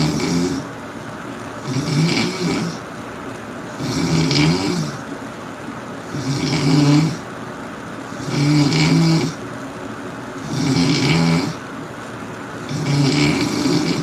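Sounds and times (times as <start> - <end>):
loud rattling snoring: 0.0 - 0.7, 1.6 - 2.9, 3.7 - 5.1, 6.0 - 7.3, 8.1 - 9.4, 10.4 - 11.6, 12.6 - 14.0.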